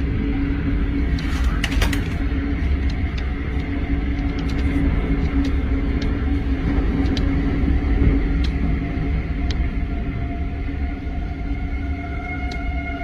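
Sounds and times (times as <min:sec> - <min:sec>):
tornado rumble: 0:00.0 - 0:13.0.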